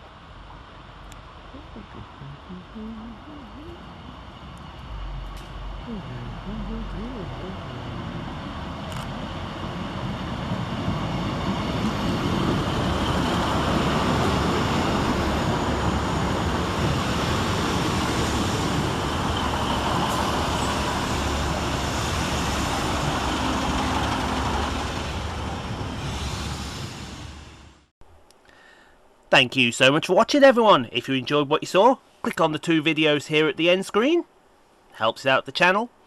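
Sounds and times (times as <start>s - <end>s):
diesel train passing through: 0.0s - 27.9s.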